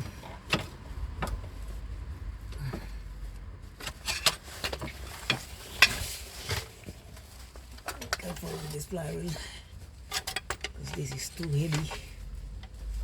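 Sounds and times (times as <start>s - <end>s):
metal clinks and knocks: 10.0s - 12.8s.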